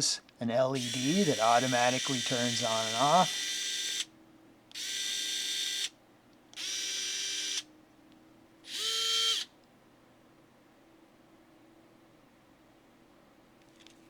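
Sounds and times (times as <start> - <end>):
electric screwdriver motor whine: 0.8 - 4.1, 4.7 - 5.9, 6.6 - 7.6, 8.7 - 9.5.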